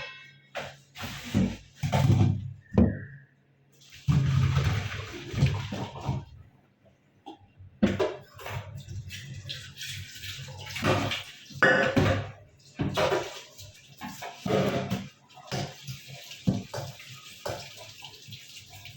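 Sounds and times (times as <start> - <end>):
water running and splashing: 3.8 - 6.4, 7.9 - 18.9.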